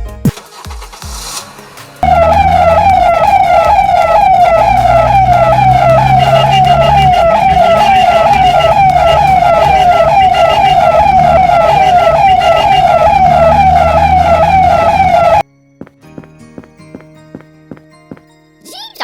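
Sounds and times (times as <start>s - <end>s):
police siren warbling: 2.0s - 15.4s.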